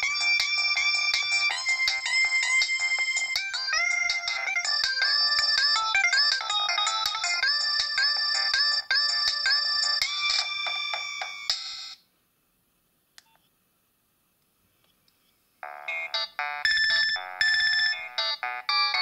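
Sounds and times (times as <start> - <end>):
mobile phone ringtone melody: 0.0 - 12.0, 15.6 - 19.0.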